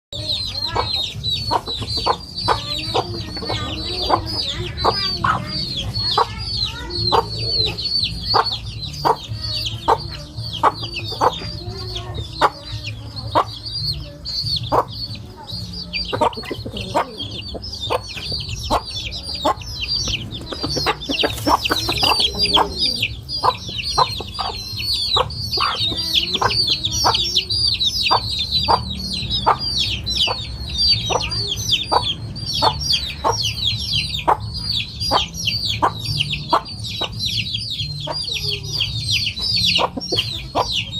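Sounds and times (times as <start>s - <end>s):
chickens clucking: 0.1s - 40.9s
chicks peeping: 0.1s - 40.9s.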